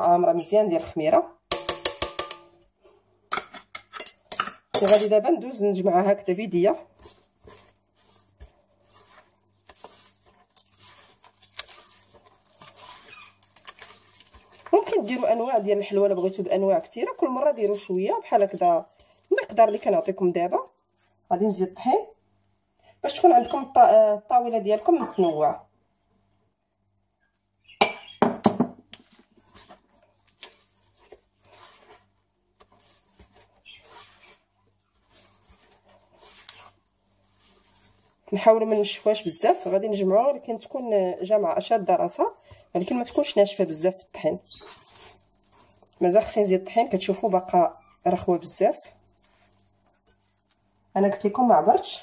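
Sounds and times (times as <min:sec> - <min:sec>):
strikes on a mixing bowl: 0:01.5 - 0:02.6
hands squishing cookie dough: 0:04.8 - 0:20.4, 0:28.8 - 0:52.0
soft taps and scraping: 0:06.8 - 0:15.2, 0:28.8 - 0:39.7, 0:49.0 - 0:50.9.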